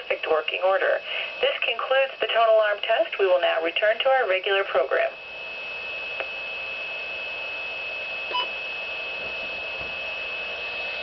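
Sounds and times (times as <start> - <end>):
radio static hiss: 0.0 - 11.0
high-pitched whine: 5.1 - 11.0
short beep: 8.3 - 8.5.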